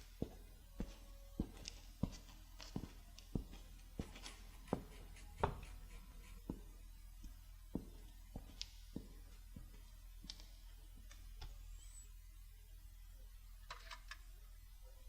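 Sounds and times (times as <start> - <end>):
footsteps at walking pace: 0.0 - 11.1.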